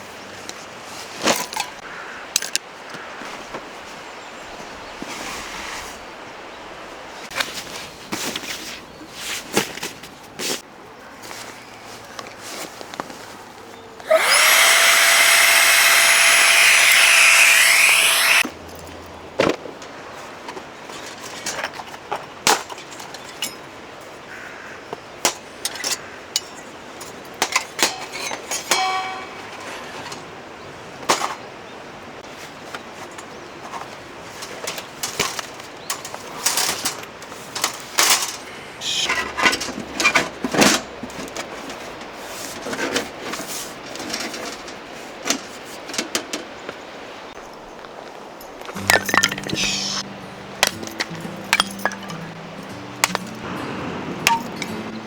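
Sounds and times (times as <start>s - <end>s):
power tool motor whine: 14.1s - 18.5s.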